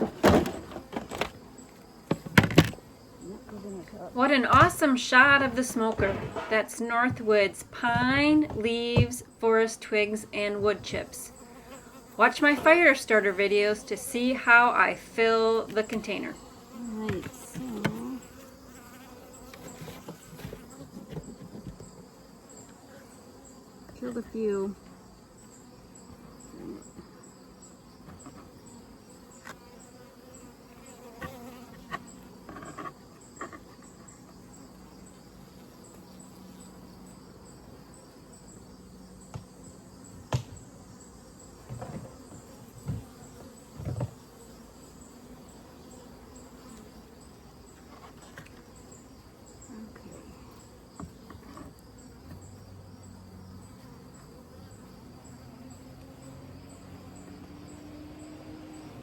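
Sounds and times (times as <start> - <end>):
knocks on wooden hive: 0.0 - 1.3, 2.1 - 2.8, 4.4 - 7.3, 39.3 - 39.5, 40.2 - 40.7
honeybees buzzing: 0.0 - 59.0
high insect chirping: 0.1 - 59.0.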